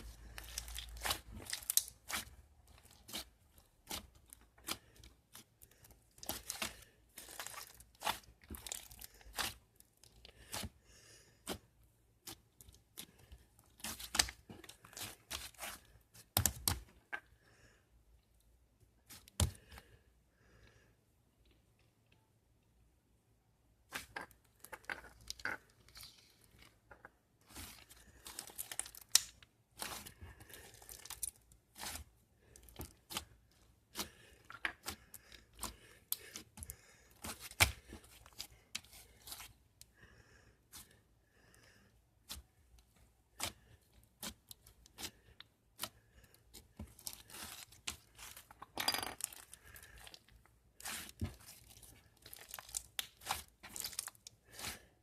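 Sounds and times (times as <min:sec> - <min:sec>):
crinkling and tearing material: 0:00.0 - 0:10.7, 0:27.4 - 0:39.6, 0:42.3 - 0:48.6, 0:49.2 - 0:55.0.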